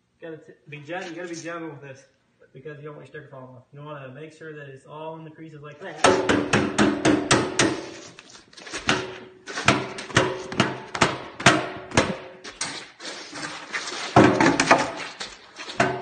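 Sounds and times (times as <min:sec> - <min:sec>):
hard ringing banging: 0:06.0 - 0:08.0, 0:08.9 - 0:12.4.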